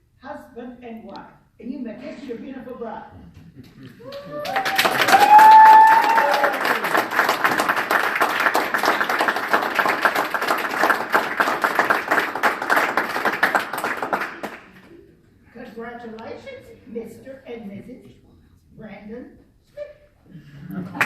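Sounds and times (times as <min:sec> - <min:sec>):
people clapping: 0:03.6 - 0:15.0, 0:20.7 - 0:21.0
high whoop: 0:04.0 - 0:06.9.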